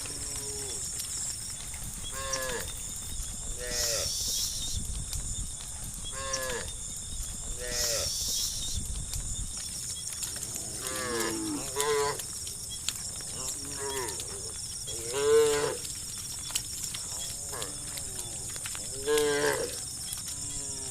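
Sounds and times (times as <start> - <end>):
cows mooing: 10.3 - 12.2, 13.3 - 15.9, 17.1 - 20.9.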